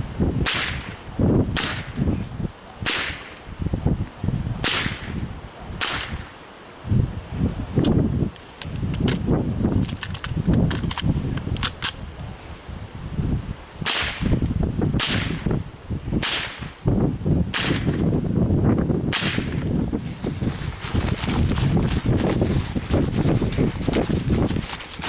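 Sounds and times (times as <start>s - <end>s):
rifle shots: 5.8s - 6.3s, 19.1s - 19.6s.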